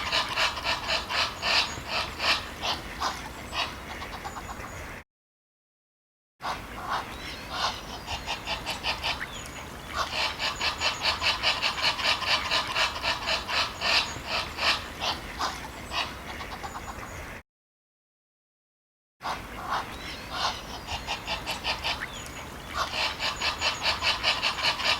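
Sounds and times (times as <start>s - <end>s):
ducks quacking: 0.0s - 5.0s, 6.4s - 17.4s, 19.2s - 24.9s.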